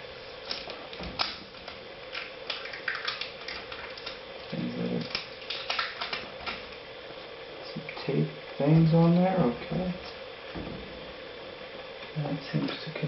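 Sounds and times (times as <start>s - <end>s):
adhesive tape peeling crackles: 0.4s - 6.8s.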